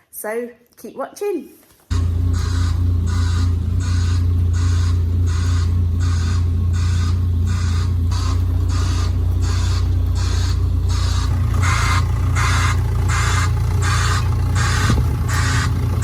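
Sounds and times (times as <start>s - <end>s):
heavy machine engine droning: 1.9s - 16.0s
rhythmic scraping: 1.9s - 16.0s.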